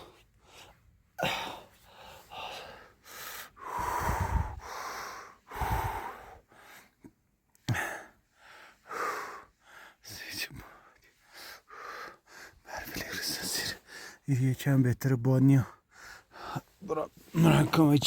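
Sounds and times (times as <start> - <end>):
person gasping for breath: 1.2 - 6.9.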